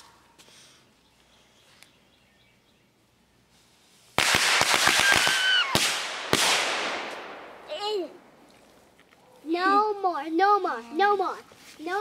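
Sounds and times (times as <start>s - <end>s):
firecrackers cracking: 4.2s - 8.5s.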